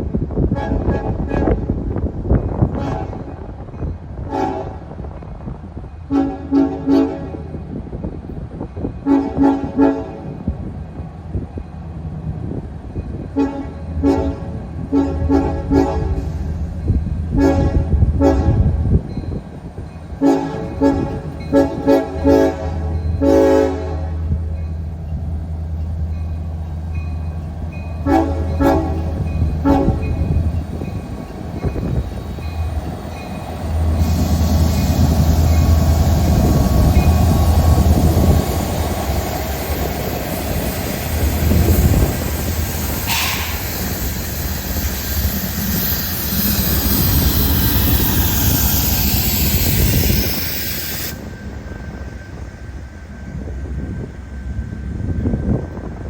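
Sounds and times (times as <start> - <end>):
diesel locomotive engine rumble: 0.0 - 56.0
rail car wheel noise: 0.0 - 56.0
train horn blasts: 0.4 - 1.7, 2.6 - 3.5, 4.2 - 5.0, 6.1 - 7.6, 9.0 - 10.4, 13.3 - 16.4, 17.3 - 19.0, 20.2 - 24.4, 28.0 - 31.0
sharp metal clank: 43.1 - 43.6.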